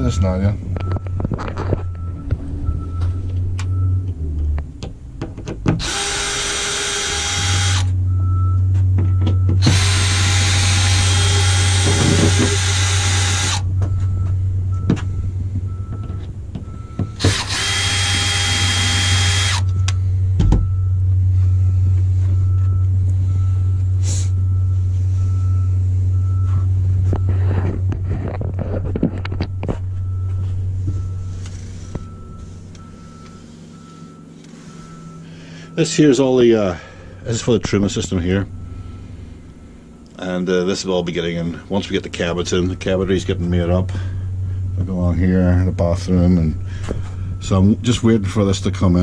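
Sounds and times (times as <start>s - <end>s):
low hum: 0.0s - 5.2s, 5.8s - 49.0s
cordless drill running: 5.8s - 7.9s, 9.6s - 13.6s, 17.2s - 19.7s.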